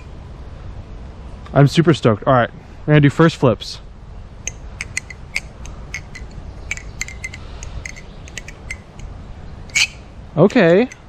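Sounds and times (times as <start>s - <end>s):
butterfly knife clicking: 4.4s - 9.1s, 9.7s - 11.0s.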